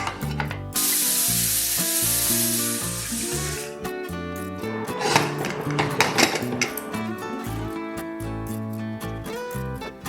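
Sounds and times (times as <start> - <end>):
held bass notes: 0.0 - 10.0
percussive hits: 3.2 - 8.7.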